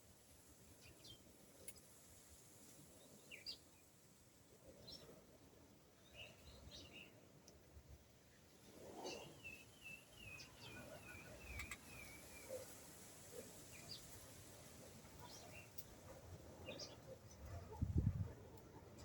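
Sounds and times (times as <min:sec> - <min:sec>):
bird chirps: 0:09.1 - 0:12.8.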